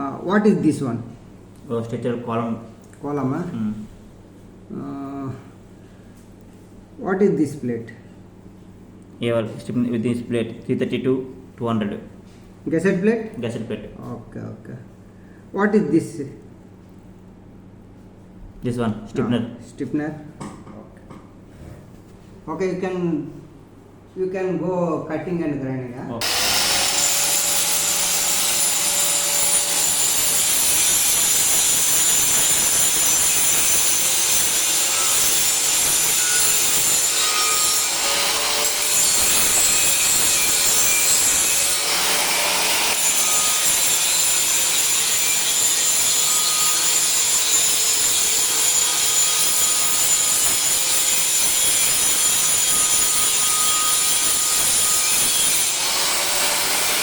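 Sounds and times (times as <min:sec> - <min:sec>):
angle grinder grinding steel: 0:26.2 - 0:57.0.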